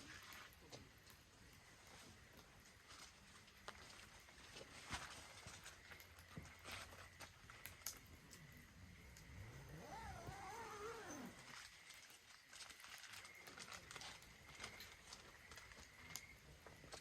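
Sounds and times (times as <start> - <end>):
wood fire crackling: 0.0 - 17.0
distant wavering animal call: 9.5 - 11.6.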